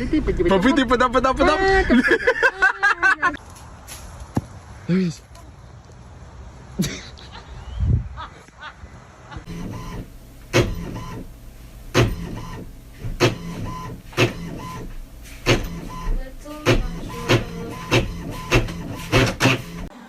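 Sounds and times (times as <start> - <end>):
steady low hum: 9.4 - 19.9
sharp mechanical clacks: 11.9 - 16.0, 16.6 - 19.9.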